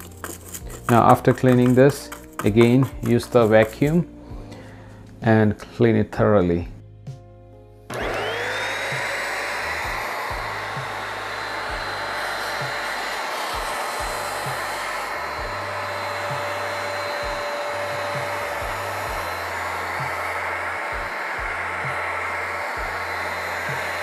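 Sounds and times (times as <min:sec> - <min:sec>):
vacuum cleaner running: 0:07.9 - 0:24.0.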